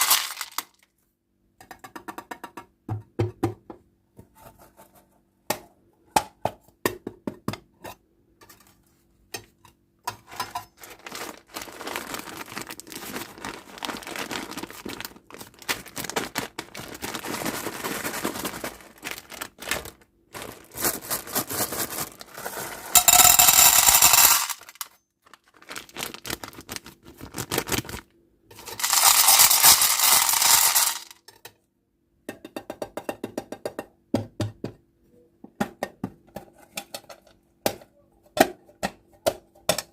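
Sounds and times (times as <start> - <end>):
packaging rustling and crinkling: 10.3 - 23.0, 23.8 - 28.1.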